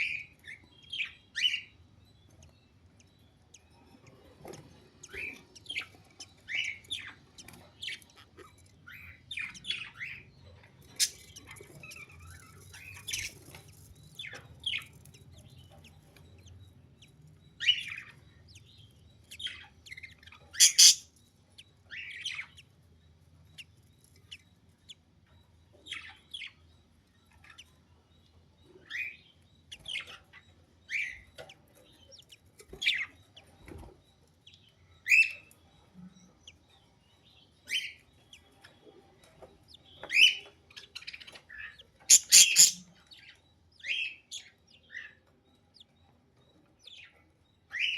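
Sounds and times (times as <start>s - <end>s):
budgerigars chirping: 0.0s - 22.7s, 25.7s - 26.7s, 28.7s - 45.9s, 46.8s - 47.9s.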